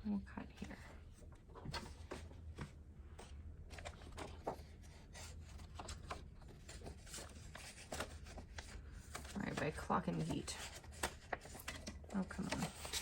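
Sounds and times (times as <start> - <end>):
paper rustling: 3.6 - 13.0.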